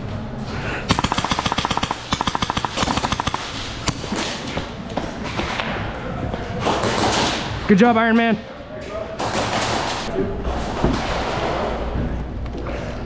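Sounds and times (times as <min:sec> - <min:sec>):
airsoft gun firing: 0:00.9 - 0:04.4.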